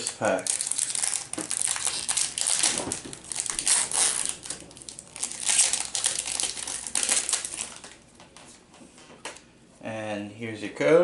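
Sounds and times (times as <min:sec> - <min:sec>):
foil wrapper crinkling: 0:00.0 - 0:08.0.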